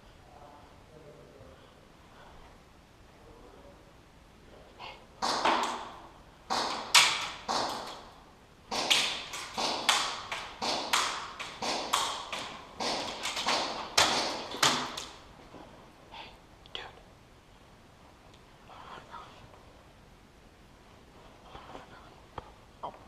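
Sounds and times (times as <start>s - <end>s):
sharp taps and knocks: 5.2s - 8.1s, 8.7s - 15.2s.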